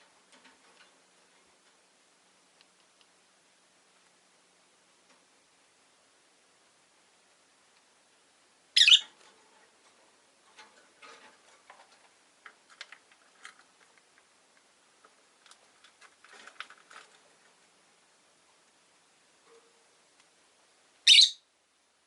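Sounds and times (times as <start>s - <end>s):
faint bird chirps: 8.8s - 9.1s, 21.0s - 21.5s
shrill bird call: 8.8s - 9.1s, 21.1s - 21.4s
soft clicks and scratches: 9.2s - 17.6s.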